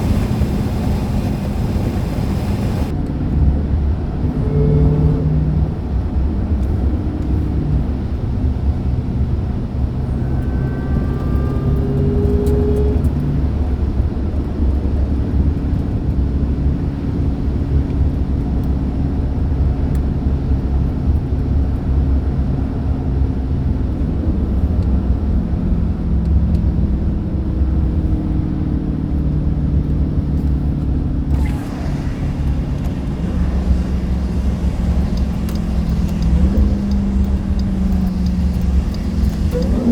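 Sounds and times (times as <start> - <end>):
rush of hiss: 0.0 - 2.9
car engine running: 0.0 - 16.1, 30.2 - 39.9.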